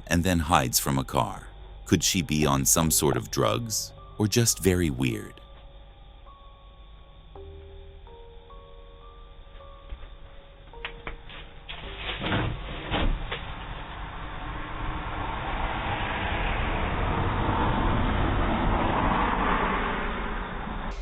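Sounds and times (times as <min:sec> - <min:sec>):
car passing by: 0:12.2 - 0:21.0.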